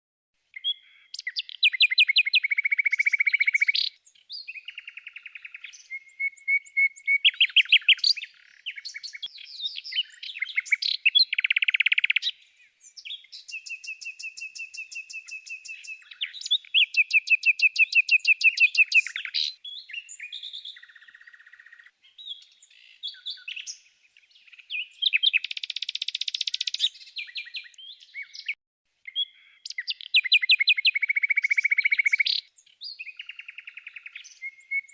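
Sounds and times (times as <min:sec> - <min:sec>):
songbird singing: 0:00.4 - 0:34.9.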